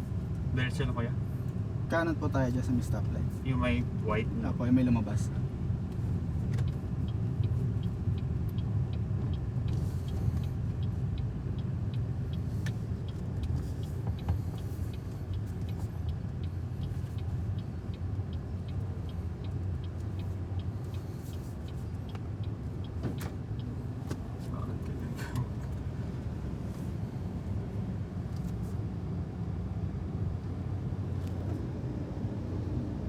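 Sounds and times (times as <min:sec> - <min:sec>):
low road rumble: 0:00.0 - 0:33.0
turn signal ticking: 0:03.6 - 0:28.4.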